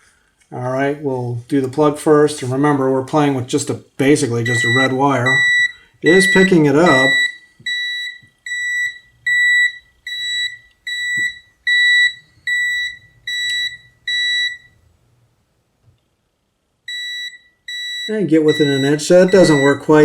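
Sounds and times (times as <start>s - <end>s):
voltage detector short high beeps: 16.9s - 20.0s.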